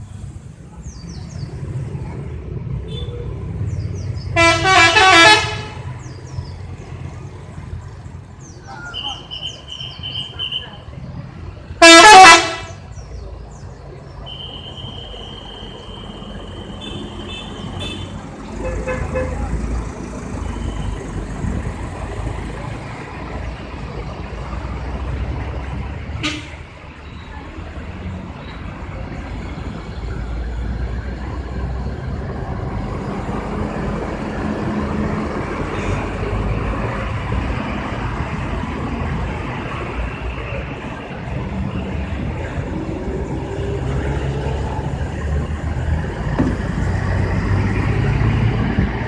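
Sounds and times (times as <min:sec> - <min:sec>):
bus engine rumble: 0:00.0 - 0:49.0
multi-tone bus horn: 0:04.4 - 0:05.9, 0:11.8 - 0:12.8, 0:14.3 - 0:19.4, 0:26.2 - 0:26.7.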